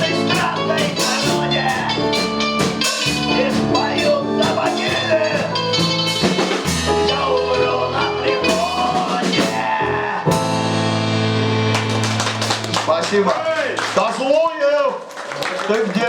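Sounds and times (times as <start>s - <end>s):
person singing: 0.0s - 2.3s, 3.1s - 5.5s, 6.9s - 10.6s
guitar: 0.0s - 14.0s
drum kit: 0.0s - 14.2s
bass: 0.0s - 14.7s.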